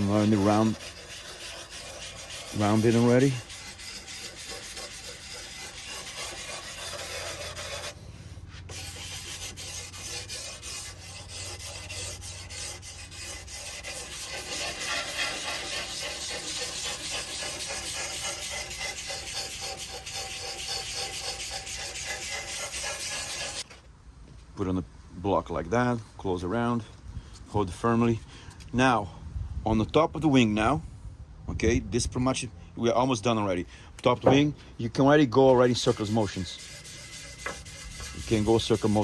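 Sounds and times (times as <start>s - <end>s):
sandpaper rubbing strokes: 0.0s - 23.8s, 34.8s - 39.0s.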